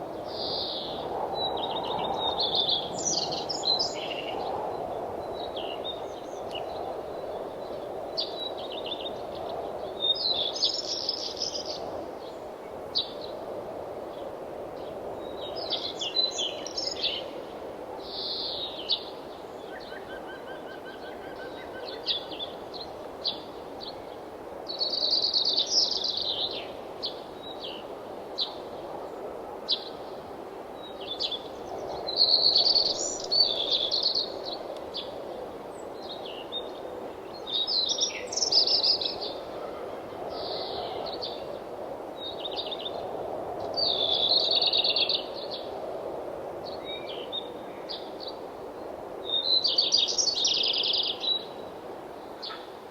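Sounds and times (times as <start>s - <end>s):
songbirds singing and chirping: 0.3s - 12.4s, 30.8s - 39.5s.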